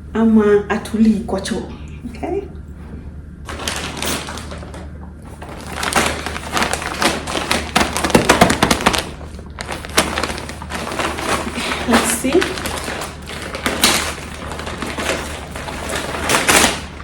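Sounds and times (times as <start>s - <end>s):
packaging crinkling: 3.5s - 17.0s.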